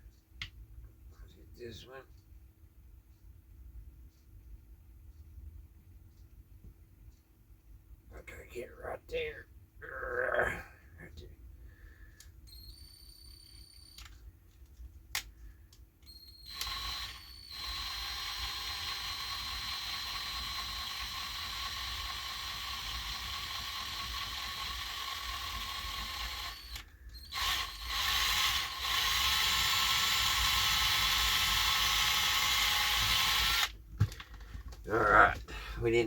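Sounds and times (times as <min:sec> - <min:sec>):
small electric drill running: 0:16.0 - 0:33.8.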